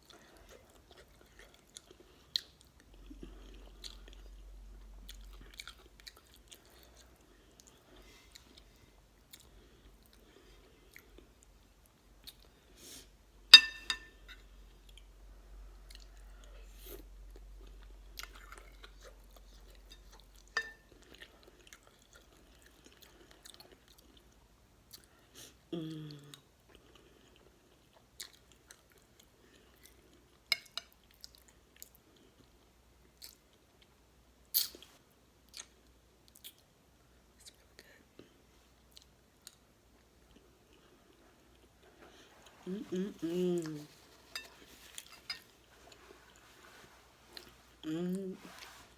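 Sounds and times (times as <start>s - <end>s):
person chewing: 5.0s - 11.4s, 26.1s - 32.5s
person humming: 25.7s - 26.3s, 42.6s - 44.0s, 47.8s - 48.6s.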